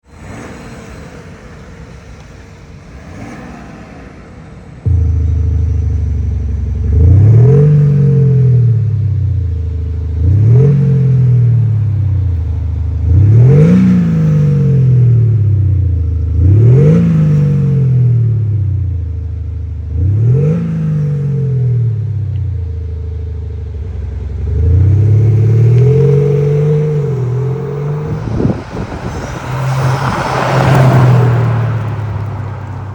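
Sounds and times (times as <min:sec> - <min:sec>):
synthesised engine revving: 0:04.9 - 0:15.7, 0:24.2 - 0:32.1.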